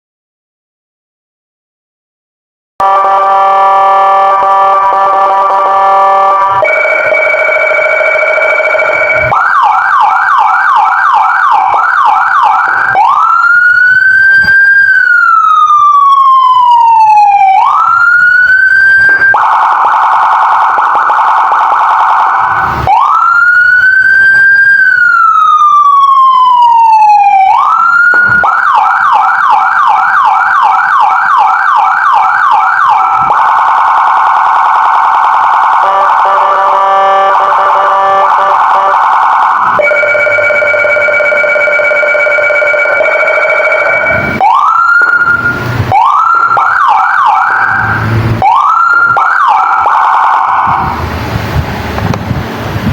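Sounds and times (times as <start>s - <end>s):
electronic siren cycling tones: 2.8s - 51.2s.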